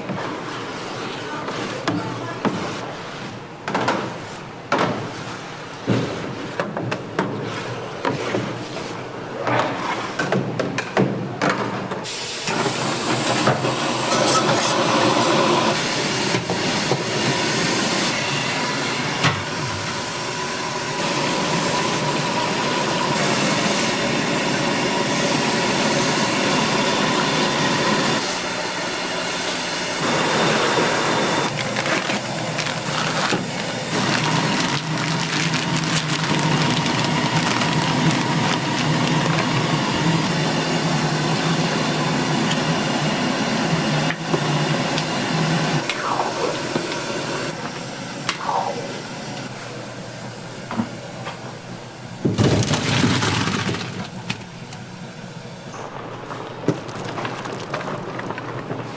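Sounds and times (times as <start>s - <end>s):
cooking steam hissing: 12.0s - 51.2s.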